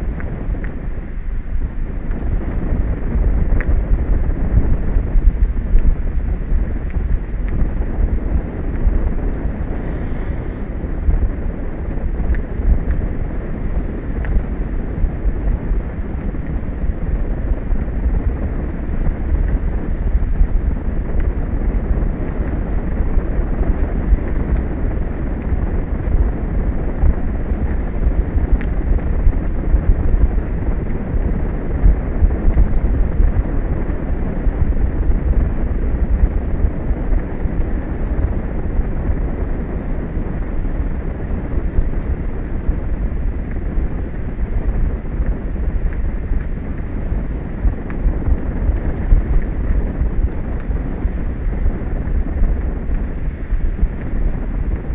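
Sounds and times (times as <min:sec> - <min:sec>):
wind buffeting microphone: 0:00.0 - 0:54.9.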